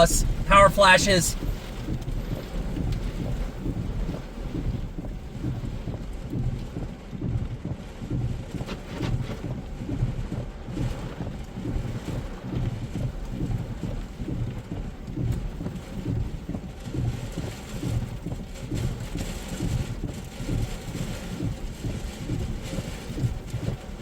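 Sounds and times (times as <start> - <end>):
heavy rain hiss: 0.0 - 1.4.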